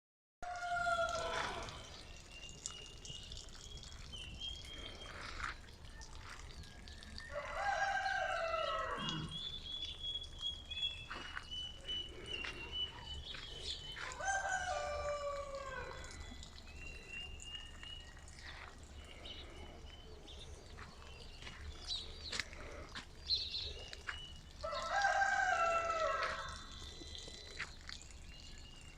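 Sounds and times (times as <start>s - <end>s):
rooster crowing: 0.4s - 1.8s, 7.3s - 9.3s, 14.0s - 16.2s, 24.6s - 26.7s
small birds chirping: 1.0s - 28.9s.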